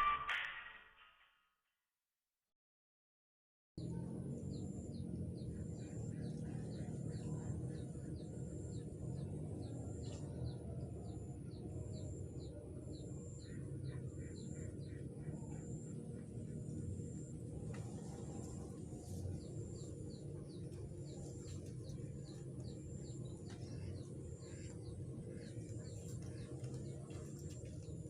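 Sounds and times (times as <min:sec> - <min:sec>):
high repeated bird note: 0:00.0 - 0:00.7
steady low rush: 0:14.6 - 0:28.0.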